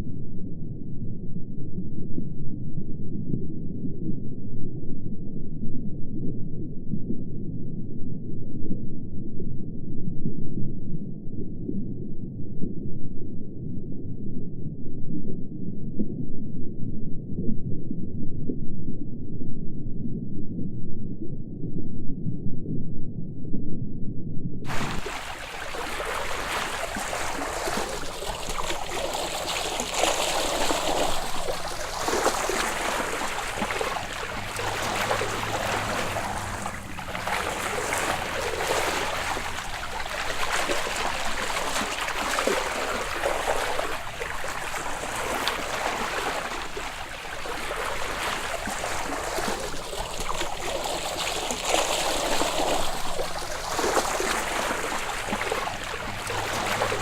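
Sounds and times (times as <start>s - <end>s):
ocean water lapping: 24.7s - 57.0s.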